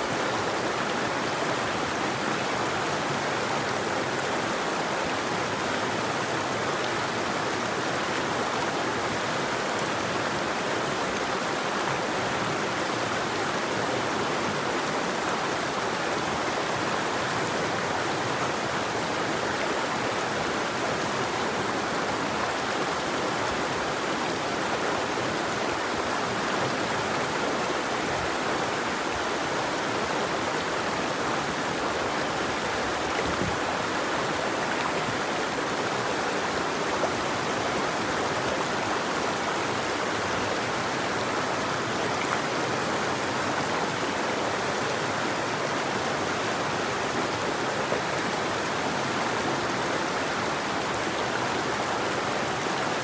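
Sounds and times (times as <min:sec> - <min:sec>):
river flowing over stones: 0:00.0 - 0:53.0.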